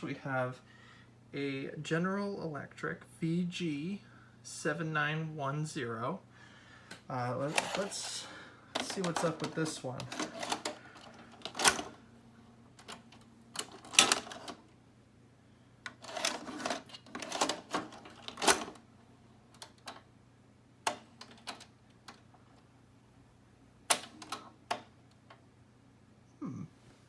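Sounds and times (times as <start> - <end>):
hardware clicking and clattering: 7.4 - 8.2, 8.8 - 12.0, 12.8 - 14.6, 15.9 - 18.8.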